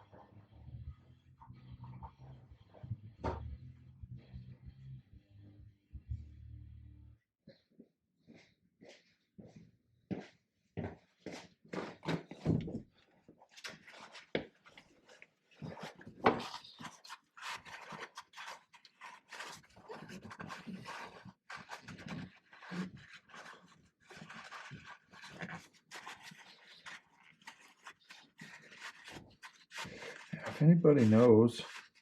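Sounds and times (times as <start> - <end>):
hands rustling and scraping: 13.6 - 32.0.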